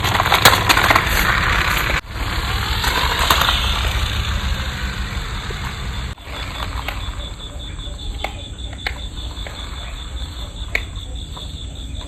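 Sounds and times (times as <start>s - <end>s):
toy car motor running: 1.1s - 7.4s.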